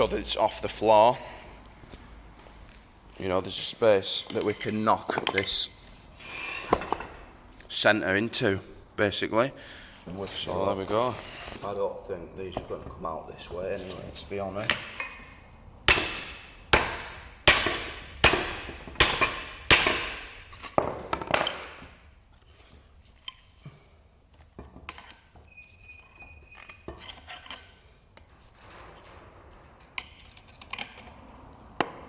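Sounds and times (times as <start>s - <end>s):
hammer striking steel: 15.8s - 20.5s.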